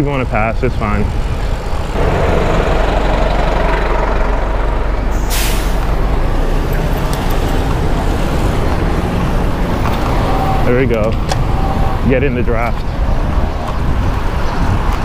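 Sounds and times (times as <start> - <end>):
heavy vehicle rumbling: 1.1 - 15.0
short air hiss: 5.2 - 5.8.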